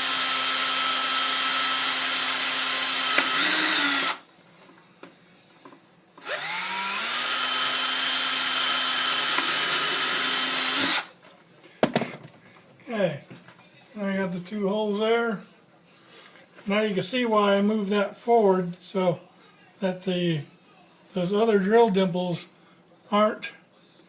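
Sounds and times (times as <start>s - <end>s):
electric drill boring through plastic: 0.0s - 4.2s, 6.2s - 11.1s.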